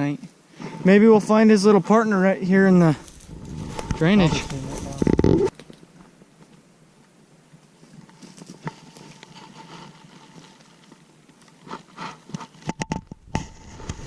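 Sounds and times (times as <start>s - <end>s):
footsteps on brushy ground: 2.8s - 6.6s, 7.8s - 12.6s.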